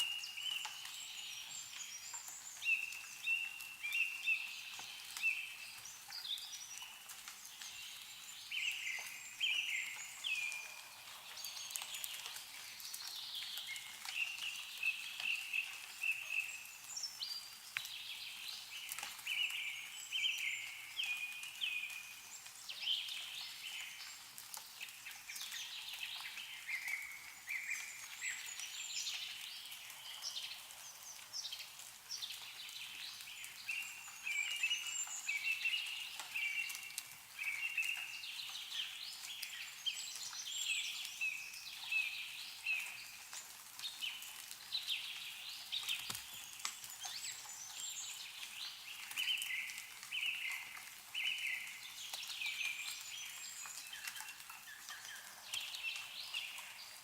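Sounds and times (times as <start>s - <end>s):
birds singing and chirping: 0.0s - 57.0s
melting snow dripping: 0.0s - 57.0s.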